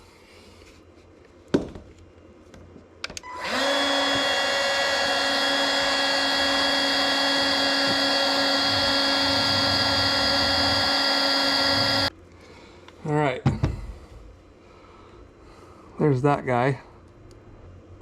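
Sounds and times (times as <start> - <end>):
heat gun fan whine: 3.0 - 12.2.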